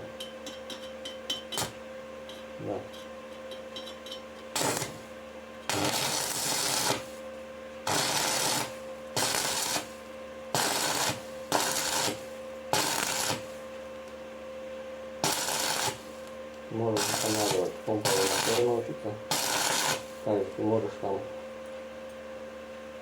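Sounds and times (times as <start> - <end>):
welding arc crackling: 4.5 - 5.1, 5.7 - 7.2, 7.8 - 13.6, 15.2 - 20.4.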